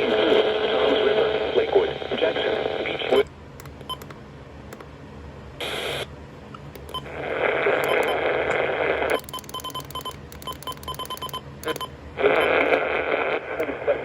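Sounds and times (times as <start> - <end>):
radio static hiss: 0.0 - 3.2, 5.6 - 6.1, 7.1 - 9.2, 12.2 - 14.0
rapid short electronic beeps: 9.1 - 12.5.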